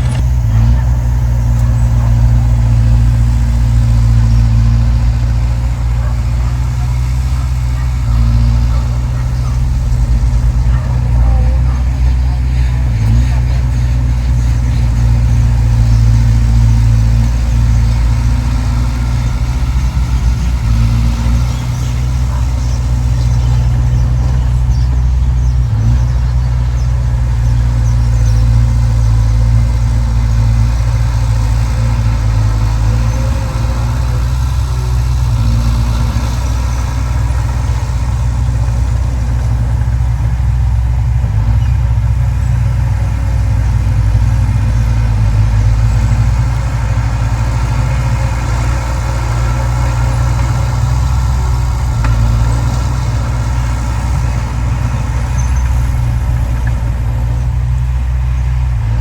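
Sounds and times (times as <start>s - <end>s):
heavy diesel engine droning: 0.0s - 59.0s.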